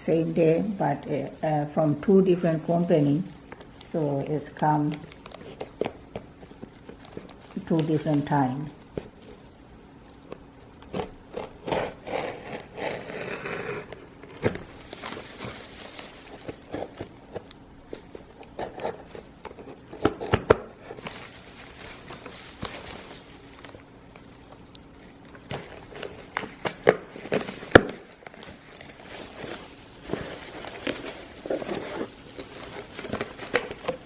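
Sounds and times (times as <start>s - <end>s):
package being unwrapped: 2.7s - 34.0s.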